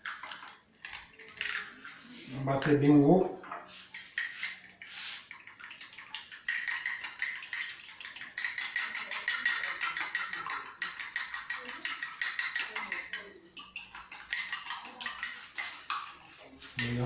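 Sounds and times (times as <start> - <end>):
fork clinking against a mug: 3.9 - 17.0.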